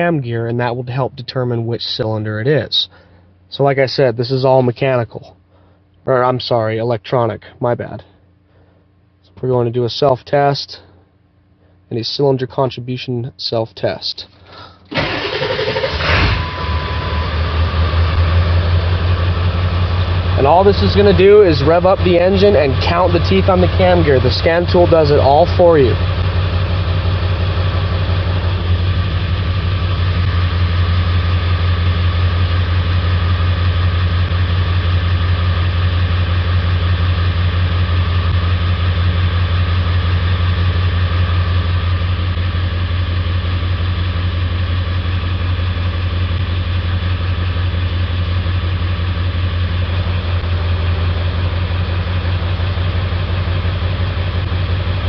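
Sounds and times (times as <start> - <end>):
diesel engine running with misfire: 14.4 - 55.0.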